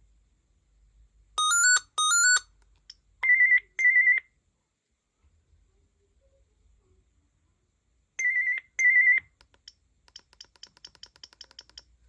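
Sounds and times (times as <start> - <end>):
cordless phone ringing: 1.4 - 2.4.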